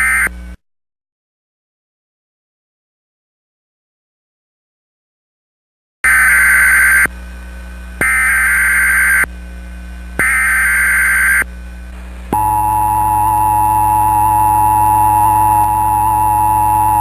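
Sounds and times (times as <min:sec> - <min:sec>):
buzzing digital data tone bursts: 0:00.0 - 0:00.3, 0:06.1 - 0:07.1, 0:08.0 - 0:09.3, 0:10.2 - 0:11.5, 0:12.3 - 0:17.0
two-tone attention signal: 0:12.4 - 0:17.0.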